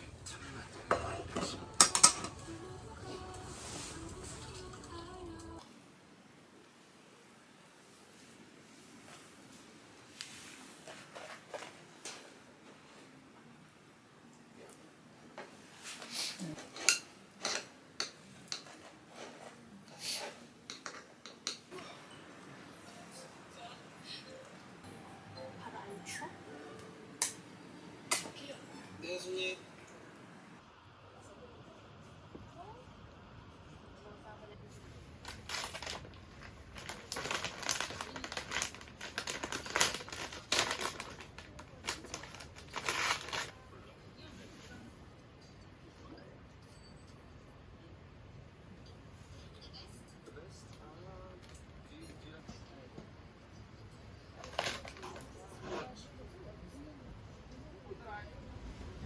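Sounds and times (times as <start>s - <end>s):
dishes and utensils clinking: 0.2s - 2.5s, 16.6s - 19.4s, 20.6s - 23.2s
crinkling and rustling: 8.0s - 13.2s, 34.8s - 43.7s, 54.3s - 56.0s.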